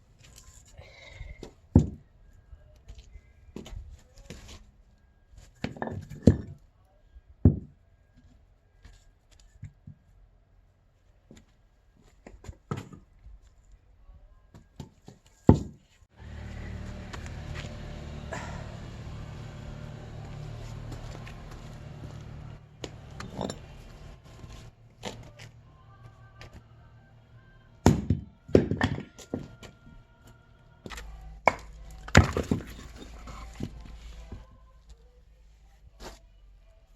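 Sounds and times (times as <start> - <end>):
axe splitting firewood: 15.5 - 25.6, 27.8 - 29.8, 30.8 - 34.0
steady low rumbling: 16.2 - 27.8.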